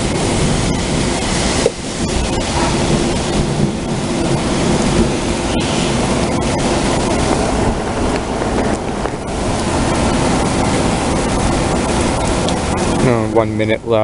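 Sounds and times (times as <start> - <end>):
heavy rain: 0.0 - 14.0
wind buffeting microphone: 0.0 - 14.0.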